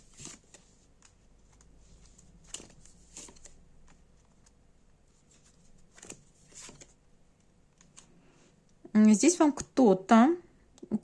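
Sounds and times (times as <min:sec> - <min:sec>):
cards rustling and sliding: 0:00.0 - 0:04.6, 0:05.2 - 0:07.0.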